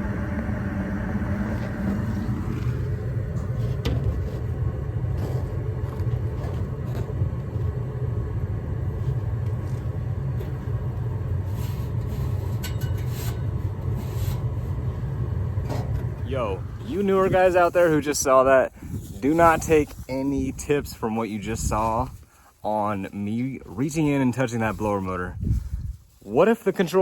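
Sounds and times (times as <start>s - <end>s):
furnace burner rumble: 0.0s - 27.0s.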